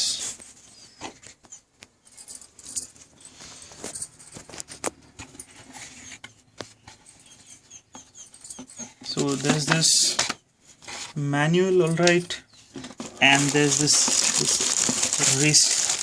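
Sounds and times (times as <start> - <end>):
packaging rustling: 12.0 - 16.0.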